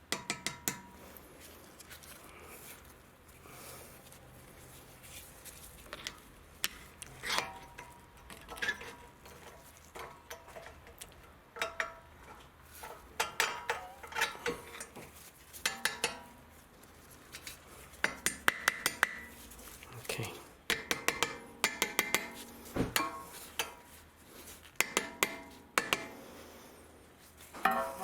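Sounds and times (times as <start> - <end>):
metal clinks and scrapes: 11.6 - 20.3, 21.7 - 26.1, 27.2 - 28.0.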